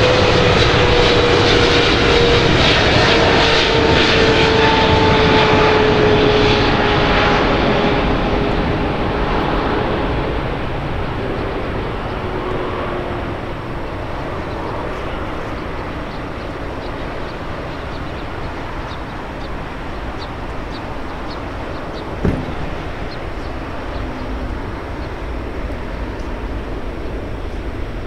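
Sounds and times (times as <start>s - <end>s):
jet engine whine: 0.0s - 28.0s
jet engines roaring: 0.0s - 28.0s
short knock: 22.2s - 22.8s.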